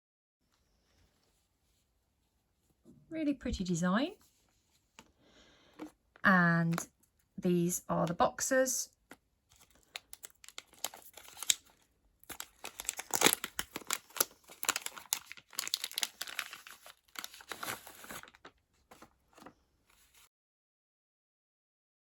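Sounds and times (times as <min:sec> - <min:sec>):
packaging crinkling and tearing: 0:09.1 - 0:20.2.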